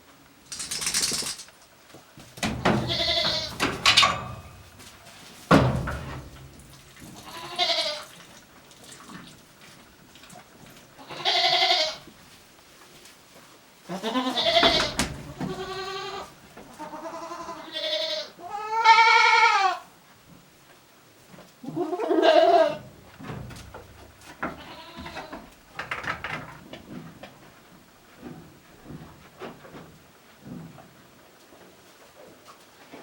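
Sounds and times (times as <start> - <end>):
goats bleating: 2.5 - 4.7, 7.0 - 8.2, 11.0 - 12.1, 13.9 - 19.8, 21.6 - 22.9, 24.4 - 25.5.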